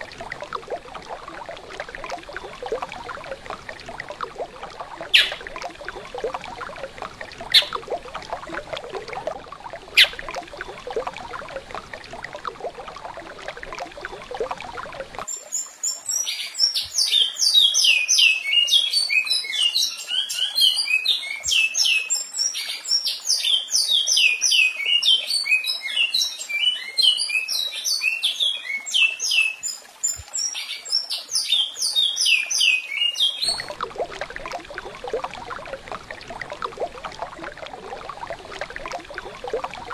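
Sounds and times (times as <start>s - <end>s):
songbird whistled song: 5.1s - 5.4s, 7.5s - 7.8s, 10.0s - 10.2s, 16.1s - 33.7s.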